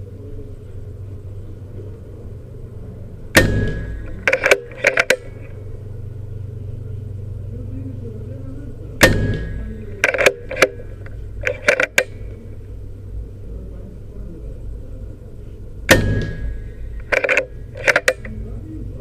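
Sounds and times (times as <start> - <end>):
air rifle shot: 3.4 - 5.4, 9.0 - 10.8, 15.9 - 18.2
metallic clicks of rifle action: 3.7 - 5.6, 9.0 - 12.4, 16.2 - 18.4.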